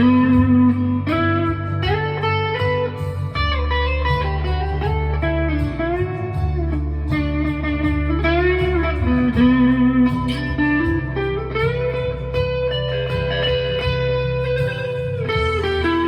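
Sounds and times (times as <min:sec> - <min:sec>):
overdriven electric guitar lead: 0:00.0 - 0:16.0.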